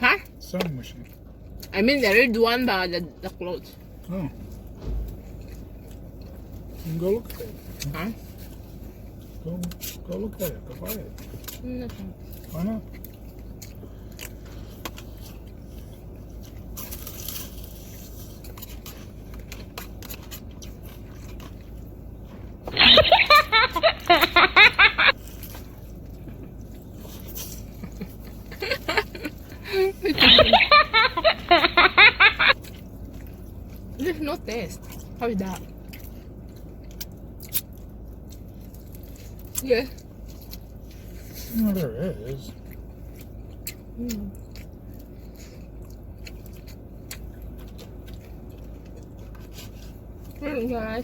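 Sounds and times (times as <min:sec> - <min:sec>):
low hum inside a car: 0:00.0 - 0:51.0
low steady background noise: 0:00.0 - 0:51.0
close-up chewing: 0:03.3 - 0:22.7, 0:23.4 - 0:51.0
high-pitched laughter: 0:22.7 - 0:25.1, 0:28.5 - 0:32.6.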